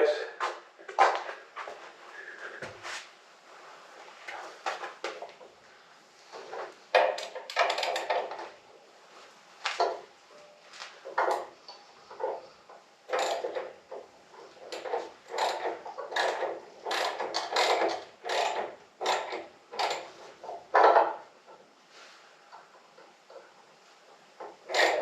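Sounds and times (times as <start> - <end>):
jack ratcheting: 6.9 - 8.4, 13.1 - 21.2, 24.6 - 25.0.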